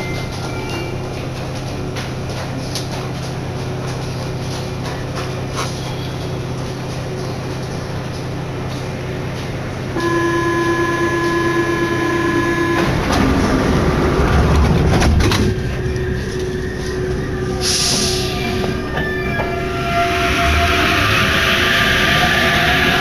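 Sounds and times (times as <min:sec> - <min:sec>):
train car rumbling: 0:00.0 - 0:23.0
steady warning tone: 0:10.0 - 0:13.8.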